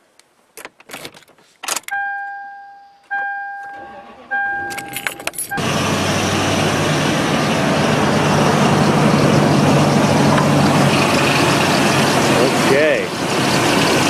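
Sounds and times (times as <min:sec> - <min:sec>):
car engine cranking and idling: 0:03.6 - 0:14.0.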